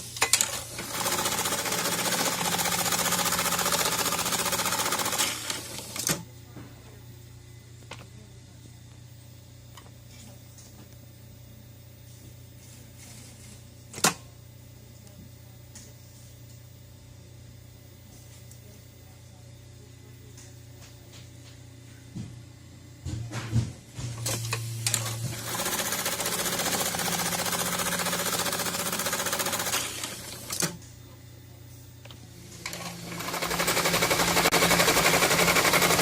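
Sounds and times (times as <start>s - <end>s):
sewing machine stitching: 0.4s - 6.1s, 24.9s - 30.7s, 32.6s - 36.0s
steady low hum: 2.4s - 35.5s.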